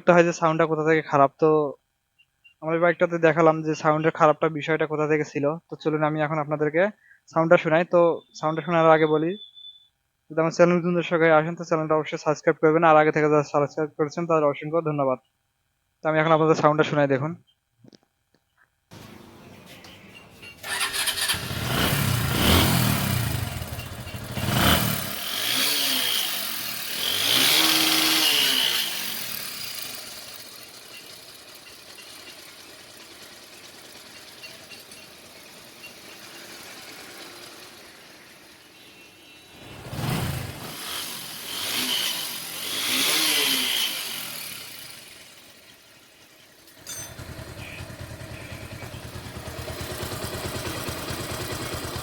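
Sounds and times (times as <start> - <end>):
motorcycle engine revving and idling: 18.9 - 52.0.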